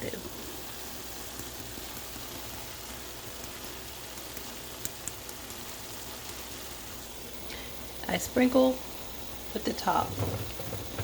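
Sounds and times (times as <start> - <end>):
food sizzling in a pan: 0.0 - 11.0
small pops: 3.4 - 5.6.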